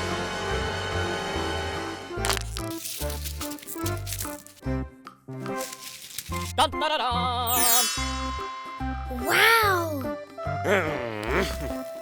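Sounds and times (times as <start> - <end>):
cheerful children's music: 2.3 - 12.0
person exclaiming wow: 9.2 - 11.8.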